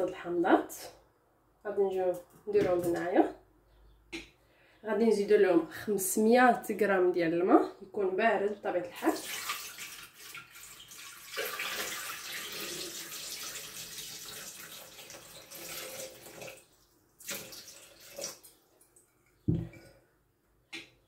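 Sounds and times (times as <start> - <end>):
water pouring into a bowl: 9.1 - 18.6
low thud: 19.5 - 19.8
short knocks: 19.5 - 19.8.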